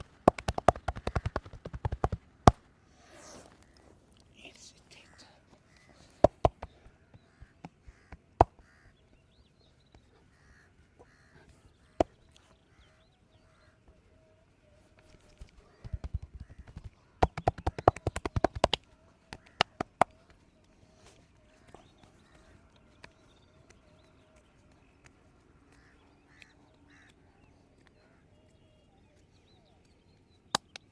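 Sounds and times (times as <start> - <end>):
hand slaps on body: 0.0 - 2.6, 15.3 - 20.2
rapid tapping massage strokes: 0.0 - 3.5, 6.2 - 8.8, 15.2 - 20.4.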